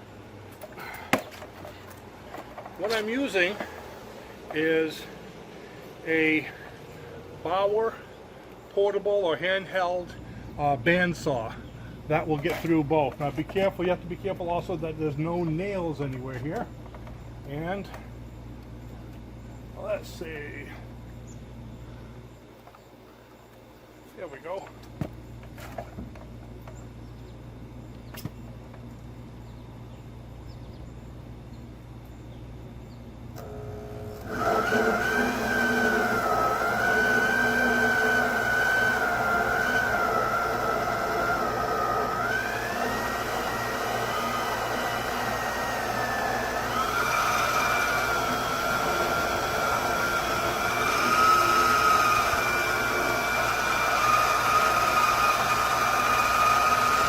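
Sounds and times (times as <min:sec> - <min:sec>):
band saw cutting wood: 0:33.4 - 0:57.0.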